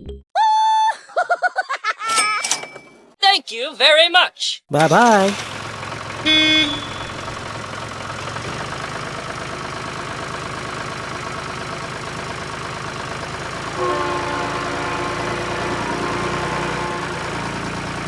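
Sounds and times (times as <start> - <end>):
vehicle engine idling: 4.8 - 18.0
short horn beep: 6.2 - 7.3.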